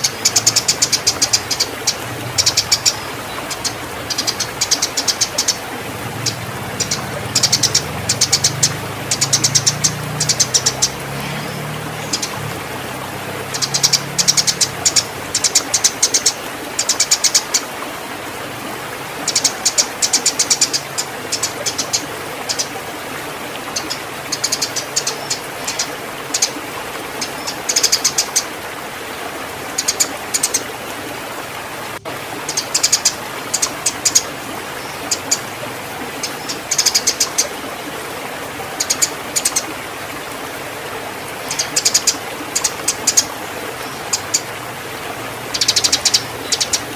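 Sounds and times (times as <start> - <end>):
sparrows chattering: 0.0 - 5.6, 6.2 - 12.4, 13.5 - 17.6, 36.2 - 37.5, 45.5 - 46.9.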